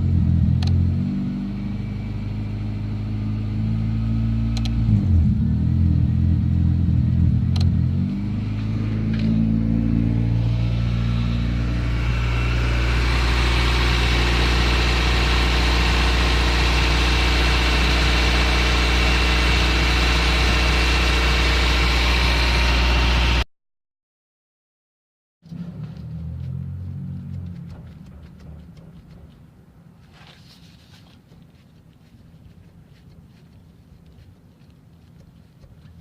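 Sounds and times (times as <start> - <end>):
car engine running with whine: 0.0 - 23.5, 25.5 - 29.3.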